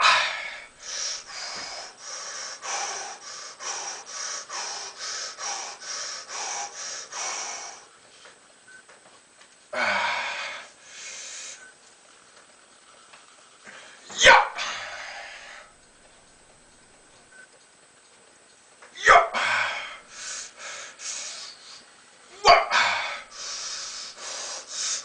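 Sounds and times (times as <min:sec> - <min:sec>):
man breathing hard: 0:00.0 - 0:07.9, 0:09.8 - 0:11.6, 0:13.7 - 0:15.8, 0:19.3 - 0:21.9, 0:22.7 - 0:25.0
man groaning: 0:09.8 - 0:10.4, 0:19.0 - 0:20.0, 0:22.4 - 0:23.3.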